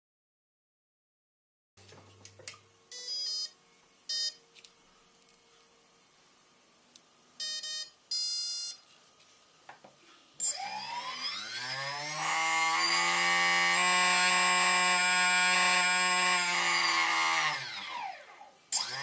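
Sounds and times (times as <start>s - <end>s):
drone motor whine: 10.4s - 19.0s.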